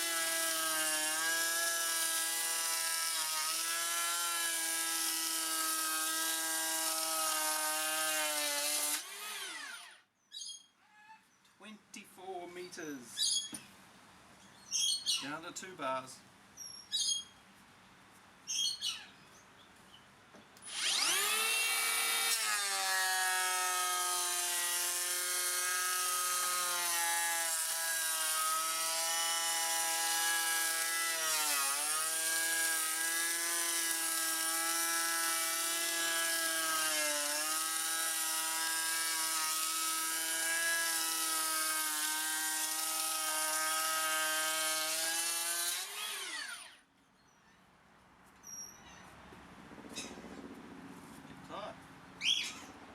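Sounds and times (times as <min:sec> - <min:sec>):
electric planer whining and cutting: 0:00.0 - 0:10.0, 0:20.7 - 0:46.8.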